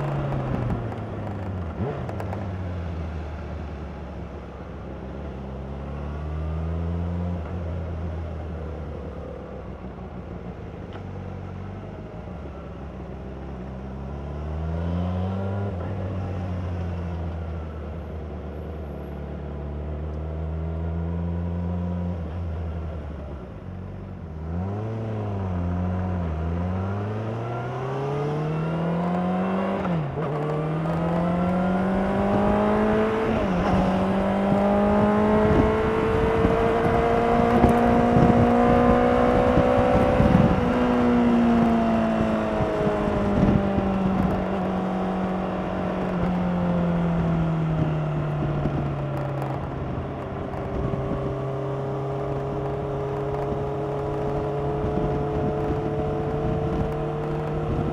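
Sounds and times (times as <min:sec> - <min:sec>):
motorcycle engine revving: 0:24.6 - 0:57.9.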